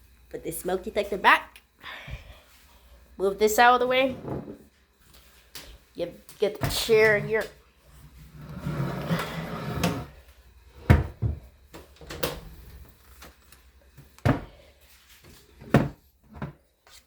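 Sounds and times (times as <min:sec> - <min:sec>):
chair scraping: 0:04.0 - 0:04.7, 0:06.6 - 0:07.5, 0:08.2 - 0:10.2
knocks of furniture being handled: 0:10.9 - 0:11.5.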